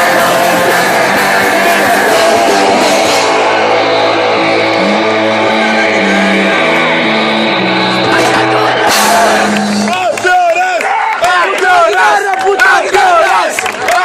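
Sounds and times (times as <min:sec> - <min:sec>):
distorted electric guitar: 0:00.0 - 0:10.5
bass guitar: 0:00.0 - 0:10.6
cymbal crash: 0:02.8 - 0:10.0.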